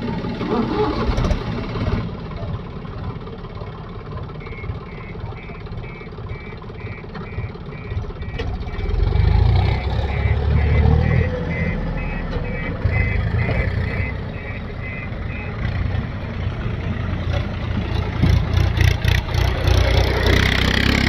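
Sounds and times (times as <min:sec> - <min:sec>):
heavy diesel engine running: 0:00.0 - 0:21.0
reversing alarm beeps: 0:04.4 - 0:15.8.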